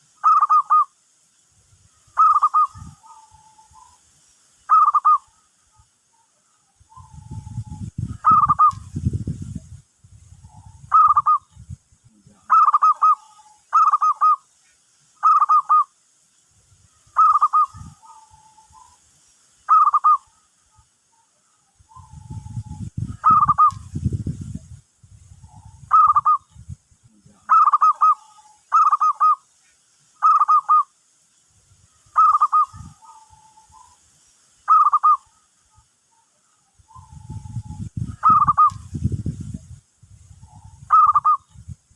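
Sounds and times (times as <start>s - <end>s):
dove cooing: 0.2s - 0.8s, 2.2s - 4.0s, 4.7s - 5.4s, 6.9s - 8.8s, 10.4s - 11.4s, 12.4s - 14.4s, 15.2s - 15.8s, 17.2s - 19.0s, 19.7s - 20.4s, 21.9s - 23.8s, 25.4s - 26.4s, 27.5s - 29.4s, 30.2s - 30.8s, 32.2s - 34.0s, 34.7s - 35.4s, 36.9s - 38.8s, 40.4s - 41.5s.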